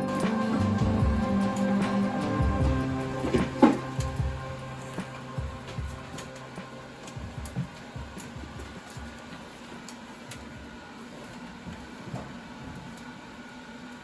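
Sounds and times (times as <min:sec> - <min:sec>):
low hum: 0:00.0 - 0:09.1
wood fire crackling in a stove: 0:00.0 - 0:14.0.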